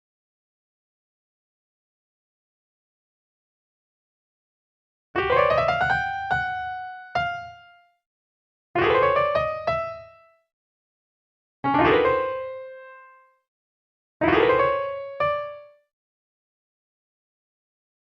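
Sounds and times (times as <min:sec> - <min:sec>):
electric piano chords: 0:05.2 - 0:07.5, 0:11.7 - 0:13.2, 0:14.2 - 0:15.7.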